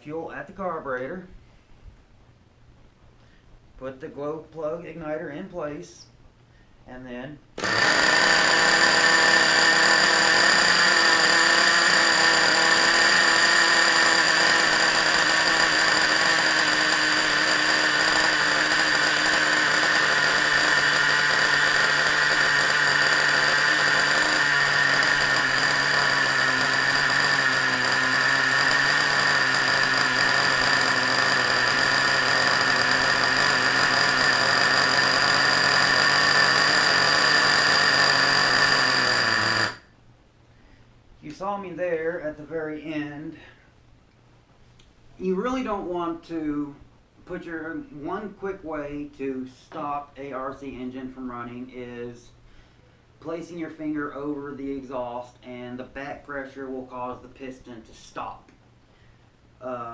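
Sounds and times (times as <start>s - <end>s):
nitro engine buzzing whine: 7.6s - 40.0s.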